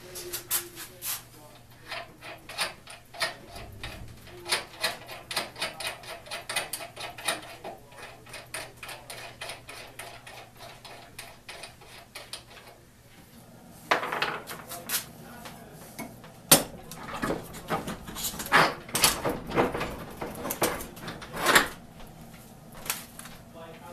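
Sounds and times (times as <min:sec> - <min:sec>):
clicking and tapping on metal and wood: 0:01.6 - 0:12.8, 0:16.0 - 0:21.8.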